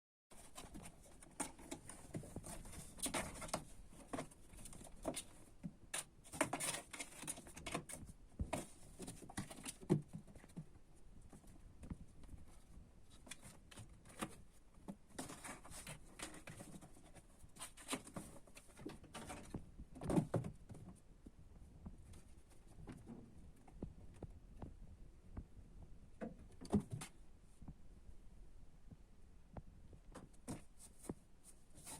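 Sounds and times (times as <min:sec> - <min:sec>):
kittens moving about: 0:00.4 - 0:25.0.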